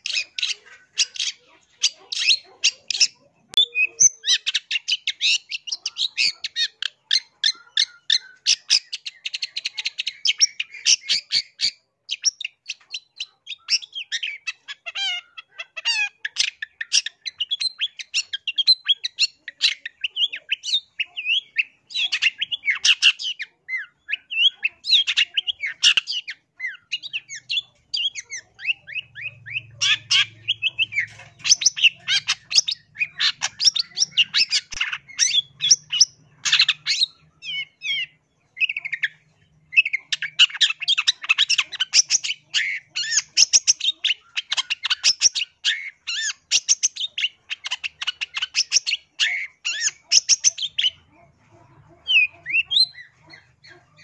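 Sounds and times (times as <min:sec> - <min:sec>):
bird chattering song: 0:00.0 - 0:54.0.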